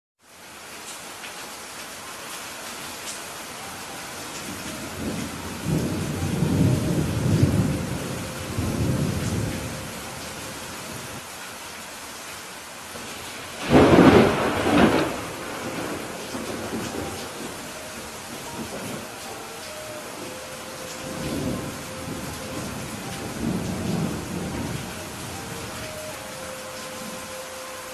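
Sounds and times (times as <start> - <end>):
steady rain: 0.2 - 27.9
thunder rolling: 5.0 - 9.9, 13.6 - 19.2, 20.1 - 25.9
sharp thunderclap: 13.6 - 17.4.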